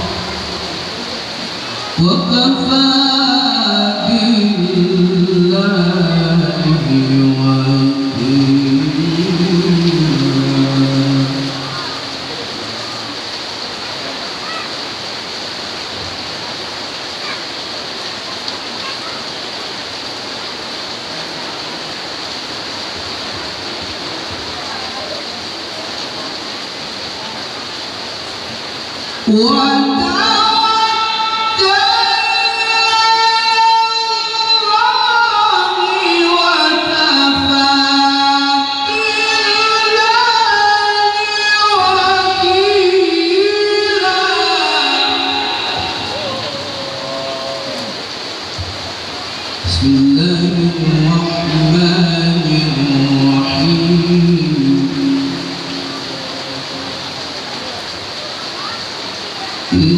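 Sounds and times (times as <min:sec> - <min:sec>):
person reciting melodically: 0:00.0 - 0:13.2, 0:29.2 - 0:48.1, 0:49.5 - 0:57.8, 0:59.6 - 0:59.9
heavy rain falling: 0:00.0 - 0:59.9.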